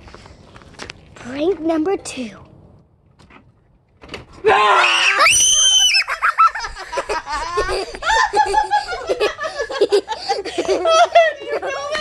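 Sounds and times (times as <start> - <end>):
girl screaming: 4.5 - 6.3.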